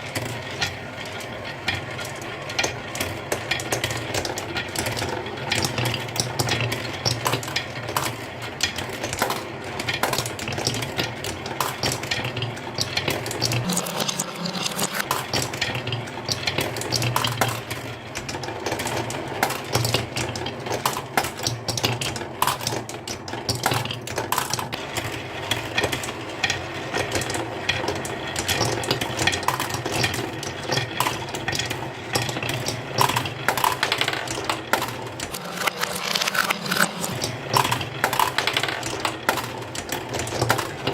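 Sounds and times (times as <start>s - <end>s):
marbles clattering down a run: 5.6s - 25.0s, 25.8s - 40.9s.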